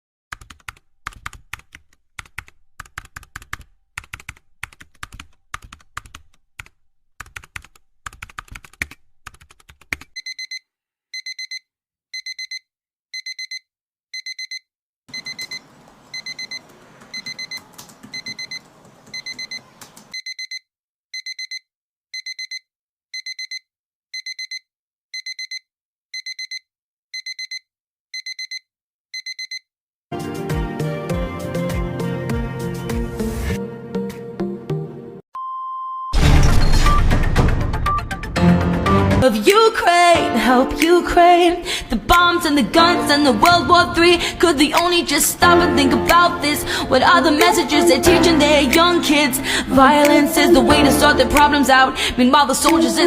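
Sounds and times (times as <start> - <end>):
keyboard typing: 0.3 - 10.5, 15.1 - 20.2
electronic alarm beeping: 10.2 - 10.6, 11.2 - 11.6, 12.2 - 12.6, 13.2 - 13.6, 14.2 - 20.6, 21.2 - 21.6, 22.2 - 22.6, 23.2 - 23.6, 24.2 - 24.6, 25.2 - 25.6, 26.2 - 26.6, 27.2 - 27.6, 28.2 - 28.6, 29.2 - 29.6, 35.4 - 37.2.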